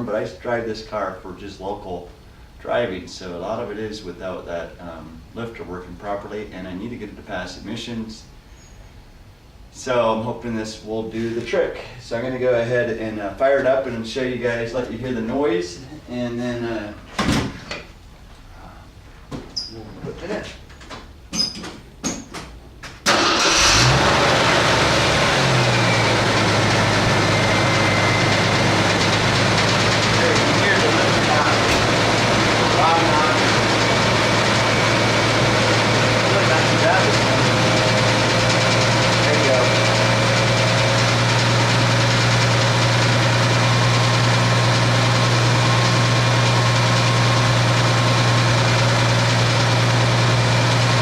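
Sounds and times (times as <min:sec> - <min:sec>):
engine starting and idling: 0:23.0 - 0:51.0.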